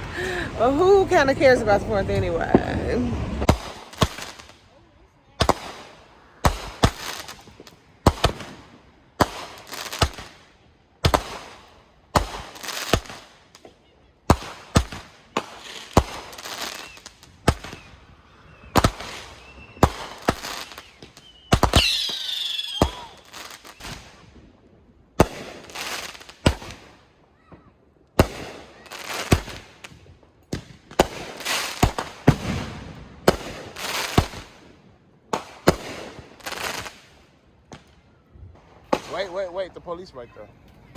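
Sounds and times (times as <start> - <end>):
fireworks bangs: 0.0 - 40.2
wavering firework whistle: 16.6 - 24.0.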